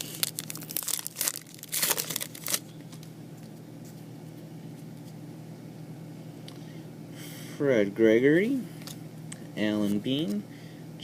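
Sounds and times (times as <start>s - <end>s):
foil wrapper tearing and crinkling: 0.0s - 2.7s.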